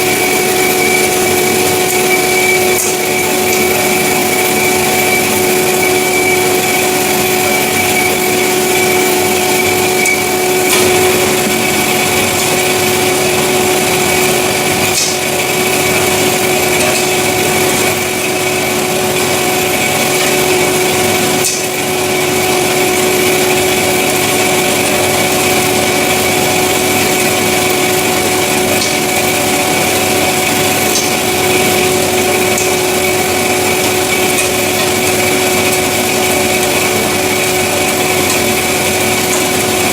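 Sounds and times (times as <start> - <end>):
band saw humming: 0.0 - 39.9.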